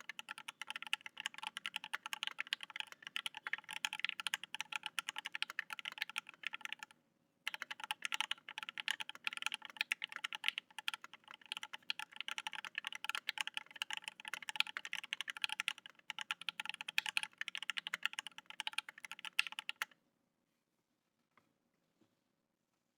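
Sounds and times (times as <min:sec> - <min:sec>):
typing on mechanical keyboard: 0:00.0 - 0:06.9, 0:07.5 - 0:20.0.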